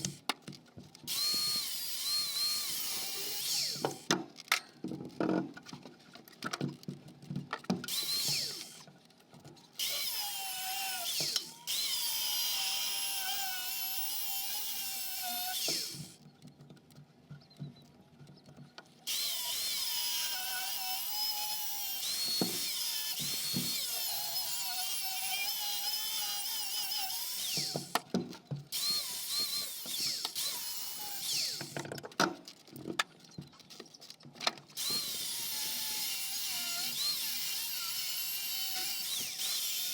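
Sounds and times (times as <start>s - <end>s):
angle grinder cutting steel: 1.1s - 4.1s, 7.9s - 8.8s, 9.8s - 16.2s, 19.1s - 28.0s, 28.7s - 31.8s, 34.8s - 39.9s.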